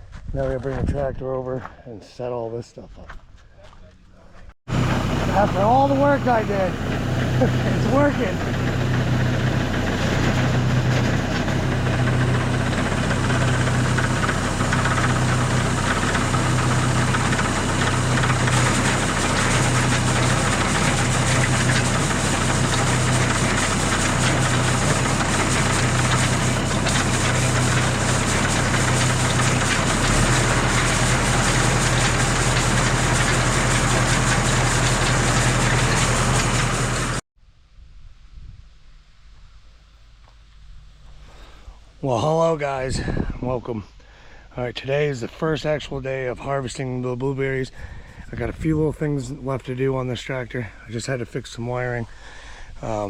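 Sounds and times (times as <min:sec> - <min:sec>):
tractor engine running: 0:04.7 - 0:37.2.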